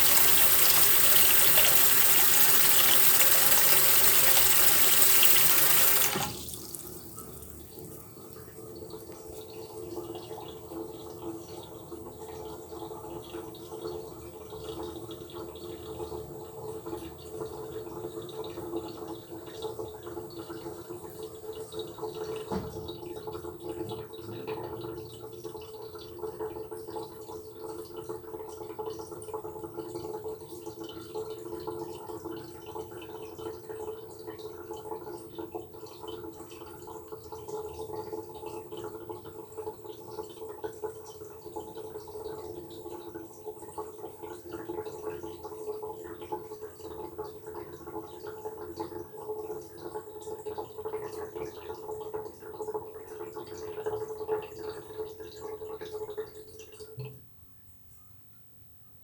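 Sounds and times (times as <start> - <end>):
faucet water splashing into sink: 0.0 - 9.3, 56.9 - 57.2.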